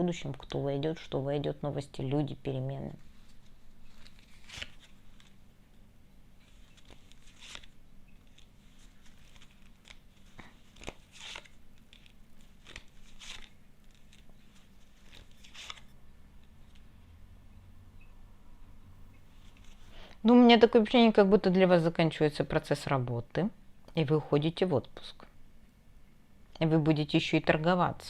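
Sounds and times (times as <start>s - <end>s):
low steady hum: 0.0s - 28.0s
cards rustling and clicking: 3.1s - 5.4s, 6.4s - 16.9s.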